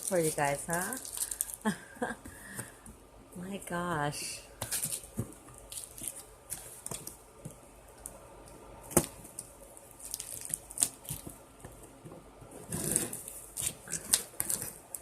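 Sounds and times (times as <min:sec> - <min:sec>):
tape and cardboard scratching: 0:12.4 - 0:15.0.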